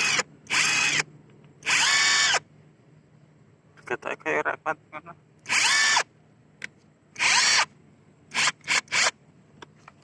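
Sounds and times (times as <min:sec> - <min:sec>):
impact wrench whining: 0:00.0 - 0:02.4, 0:05.4 - 0:06.1, 0:07.2 - 0:07.7, 0:08.3 - 0:09.2.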